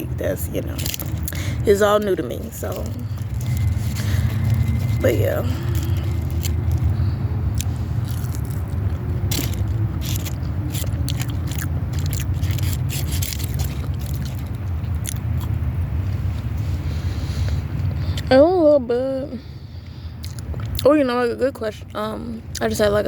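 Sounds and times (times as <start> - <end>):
steady low hum: 0.0 - 23.0
chewing and biting food: 0.7 - 15.7, 20.2 - 20.8.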